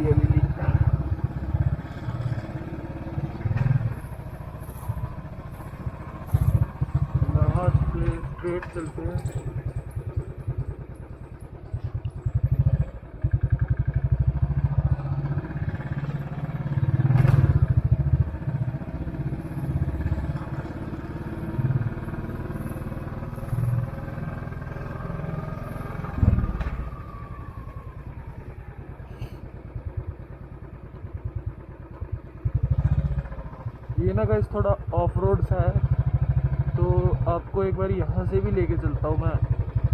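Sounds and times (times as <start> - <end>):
motorcycle engine thumping: 26.1 - 27.3.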